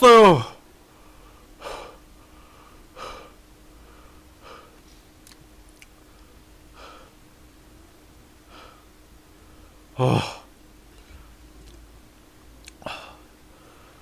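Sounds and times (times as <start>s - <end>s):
man breathing heavily: 0.9s - 4.9s, 6.0s - 7.2s, 8.4s - 11.4s, 12.8s - 14.0s.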